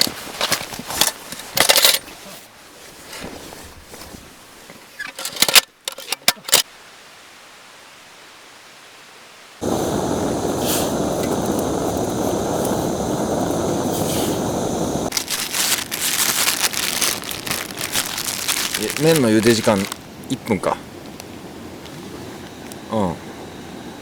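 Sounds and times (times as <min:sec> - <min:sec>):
steady rushing hiss: 0:09.6 - 0:24.0.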